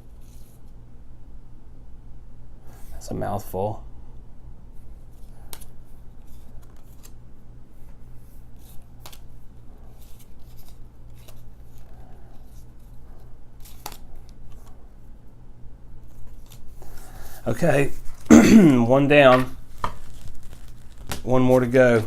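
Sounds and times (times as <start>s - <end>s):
steady low hum: 0.0s - 22.0s
cards clicking and snapping: 8.6s - 9.3s, 13.6s - 14.7s, 19.3s - 21.3s.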